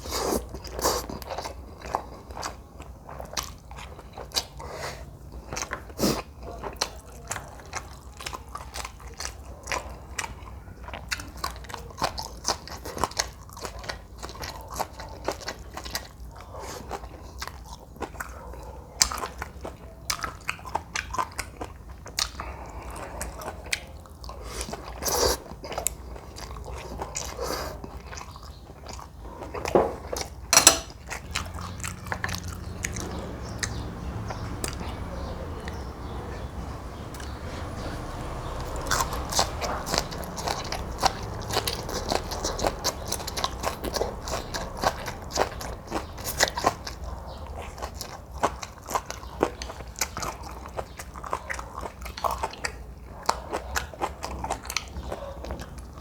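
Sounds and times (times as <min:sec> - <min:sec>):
person chewing with mouth clicks: 0:31.1 - 0:55.9.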